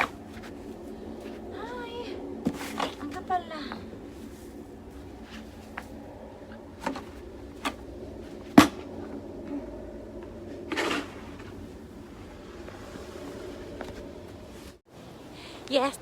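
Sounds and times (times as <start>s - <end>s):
shovel scraping snow: 10.7s - 11.6s.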